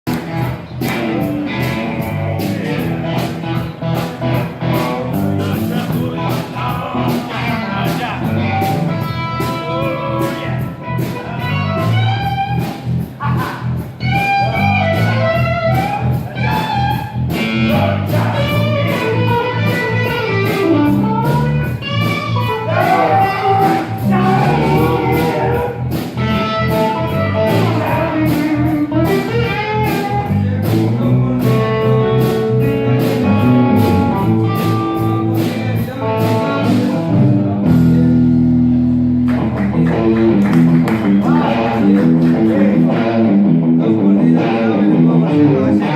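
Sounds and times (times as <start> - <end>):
guitar: 0.0 - 45.9
steady beat: 0.1 - 45.9
person singing: 4.6 - 11.5, 22.4 - 25.8, 41.1 - 45.9.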